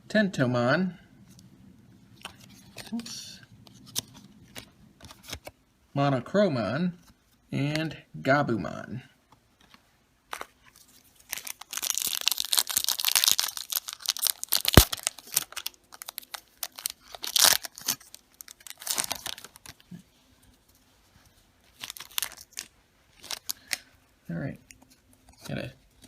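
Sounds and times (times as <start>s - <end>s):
wrapper tearing and crinkling: 10.3s - 20.0s, 21.7s - 23.9s
sharp wrapper snap: 11.7s - 19.2s.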